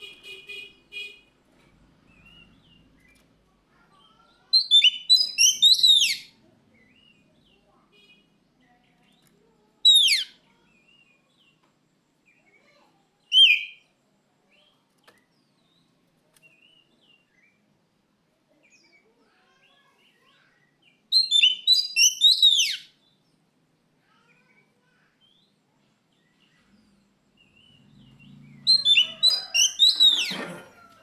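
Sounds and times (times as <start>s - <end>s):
soft bird chirps: 2.0s - 11.7s, 12.3s - 17.7s, 18.5s - 23.4s, 24.0s - 31.0s
bird whistling song: 4.6s - 6.3s, 9.9s - 10.4s, 13.3s - 13.8s, 21.1s - 23.0s, 28.6s - 30.4s.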